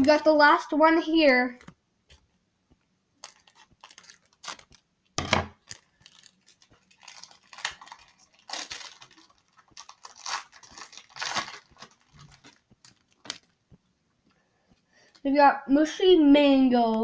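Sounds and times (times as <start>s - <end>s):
plastic packaging tearing: 3.2s - 4.8s, 5.5s - 13.6s.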